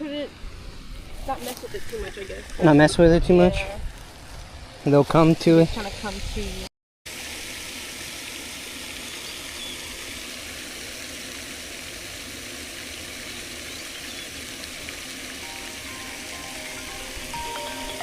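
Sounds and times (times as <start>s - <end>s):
rushing water: 4.8s - 18.0s.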